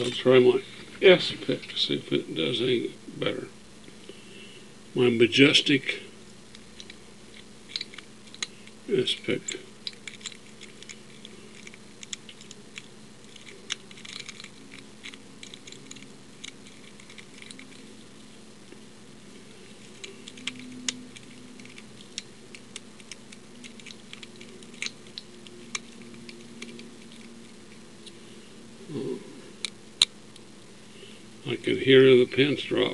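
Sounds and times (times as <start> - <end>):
lock pick clicking and scraping: 9.8 - 17.8.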